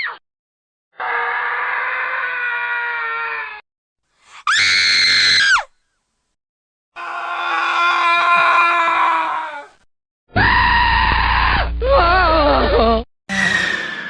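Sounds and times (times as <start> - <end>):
held horror scream: 1.0 - 3.6, 4.4 - 5.7, 7.0 - 12.5, 13.3 - 14.0.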